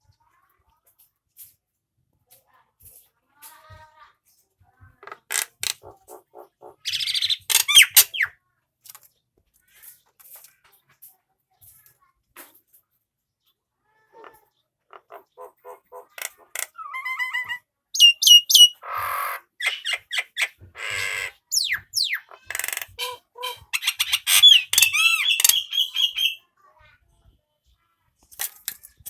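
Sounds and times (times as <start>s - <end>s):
bird calling and whistling: 6.8s - 8.3s, 16.8s - 18.9s, 21.5s - 26.4s.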